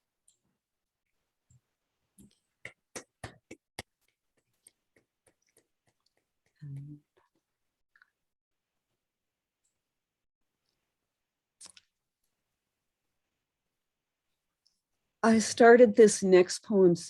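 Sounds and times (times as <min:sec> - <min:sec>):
low voice hum: 0:06.6 - 0:07.2.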